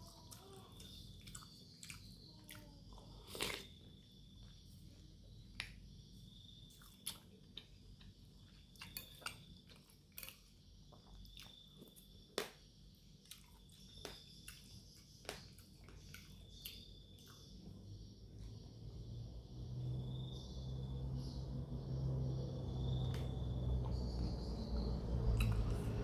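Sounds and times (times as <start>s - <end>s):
chewing food: 0.0s - 5.9s, 6.6s - 18.9s, 23.0s - 26.0s.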